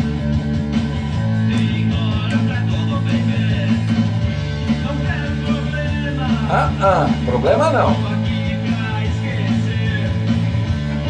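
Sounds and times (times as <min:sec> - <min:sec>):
rock music with electric guitar: 0:00.0 - 0:11.0.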